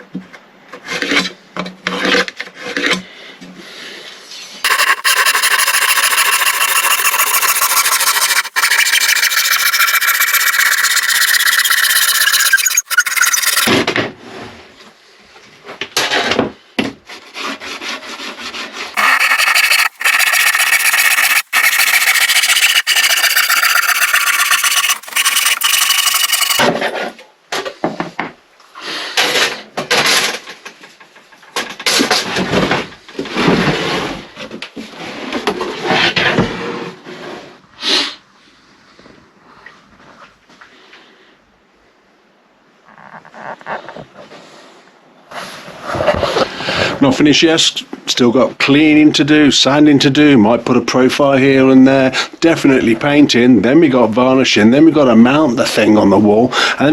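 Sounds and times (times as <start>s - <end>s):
power tool cutting wood: 4.7s - 13.8s, 19.0s - 26.6s.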